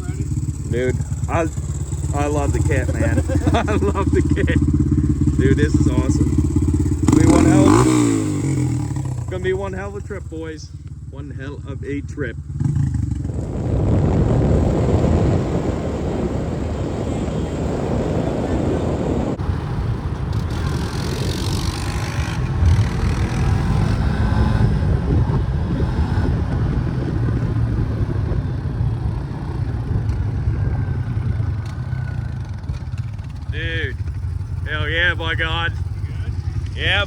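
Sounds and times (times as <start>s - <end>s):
off-road vehicle engines running: 0.0s - 37.0s
wind rumble on microphone: 12.0s - 37.0s.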